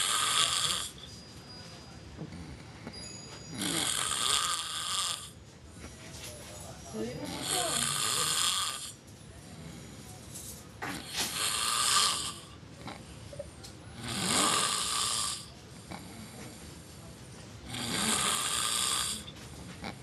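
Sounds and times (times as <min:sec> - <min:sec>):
man snoring: 0:00.0 - 0:01.0, 0:03.5 - 0:05.4, 0:07.2 - 0:09.0, 0:10.8 - 0:13.0, 0:14.0 - 0:16.4, 0:17.6 - 0:20.0.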